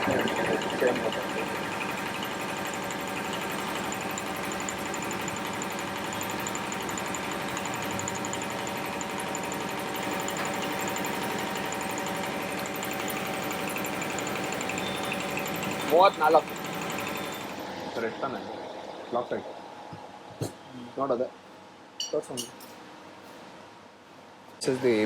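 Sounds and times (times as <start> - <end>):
machine running rhythmically: 0.0 - 19.6.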